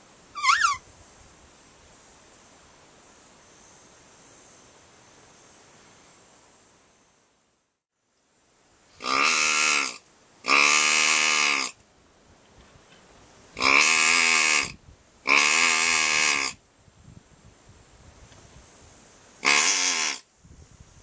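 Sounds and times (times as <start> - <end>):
person making pig calls: 0.4 - 0.8, 9.0 - 11.7, 13.6 - 16.6, 19.4 - 20.2.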